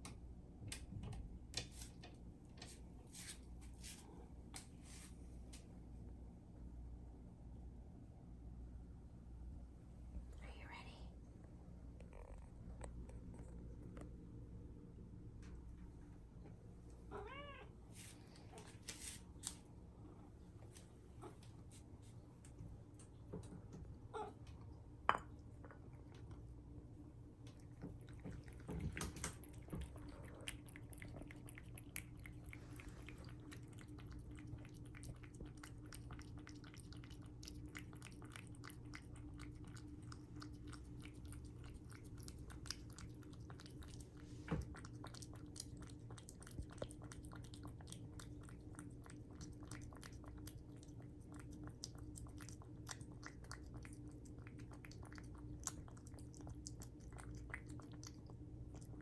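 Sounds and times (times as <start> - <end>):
faint low hum: 0.0 - 59.0
cat chewing food: 11.6 - 15.8, 21.5 - 59.0.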